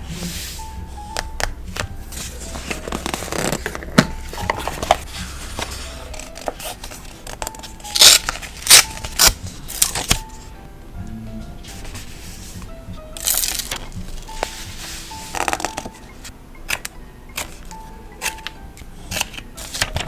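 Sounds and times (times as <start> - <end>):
paper being torn: 2.4 - 10.2.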